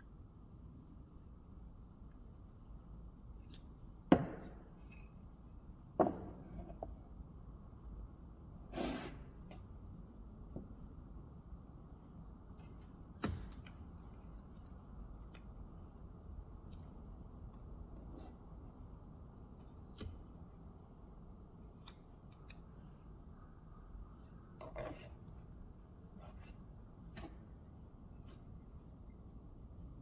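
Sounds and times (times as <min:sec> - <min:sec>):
low steady hum: 0:00.0 - 0:30.0.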